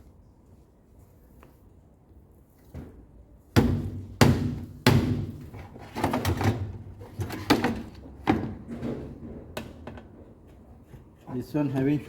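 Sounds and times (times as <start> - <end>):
hard objects knocking and clunking: 3.6 - 11.2.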